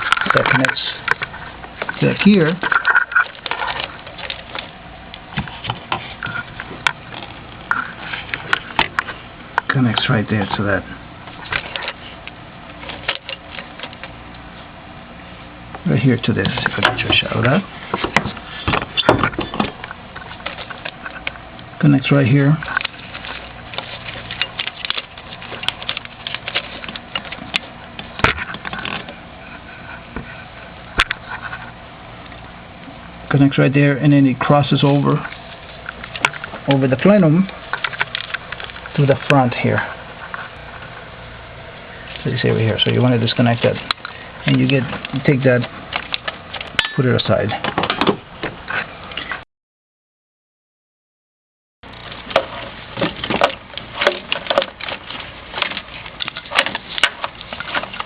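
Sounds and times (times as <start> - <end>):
parts clicking and rattling: 0.0 - 14.4, 16.4 - 21.6, 22.5 - 29.2, 35.2 - 40.9, 43.6 - 48.2, 51.9 - 58.0
hands handling hose clicks and knocks: 22.6 - 29.2, 51.9 - 58.0.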